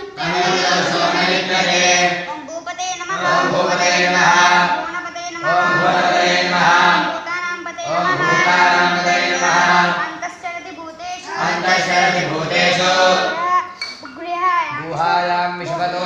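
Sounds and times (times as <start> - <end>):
voices chanting in unison: 0.0 - 2.3, 3.1 - 10.2, 11.2 - 13.5.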